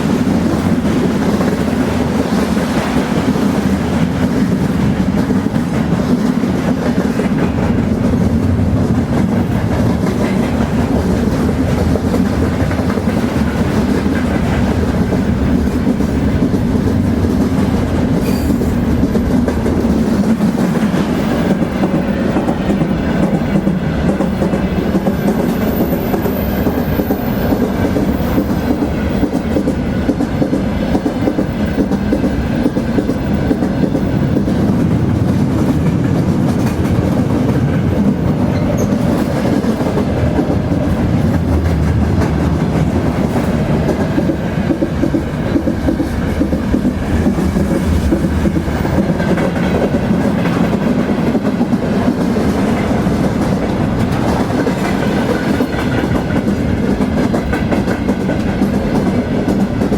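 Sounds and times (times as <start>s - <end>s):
train wheels on rails: 0.0s - 59.9s.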